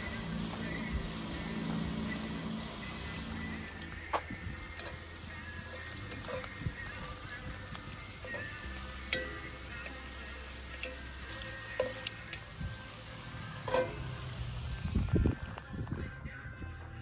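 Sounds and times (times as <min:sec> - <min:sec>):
potatoes sizzling in oil: 0:00.0 - 0:15.1.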